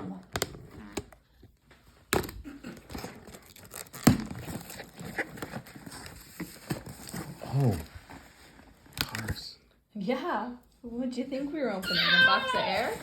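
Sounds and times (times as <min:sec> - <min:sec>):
packaging crinkling: 0:02.8 - 0:07.9.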